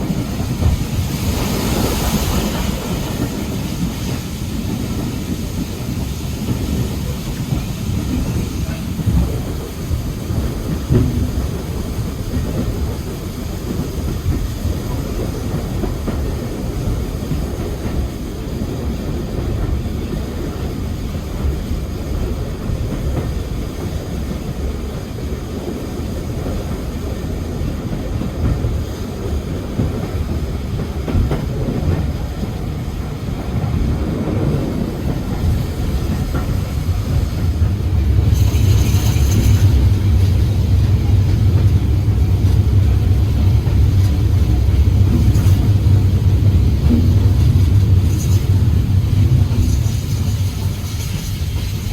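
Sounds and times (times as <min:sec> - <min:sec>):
train wheels rumbling on track: 0:00.0 - 0:51.9.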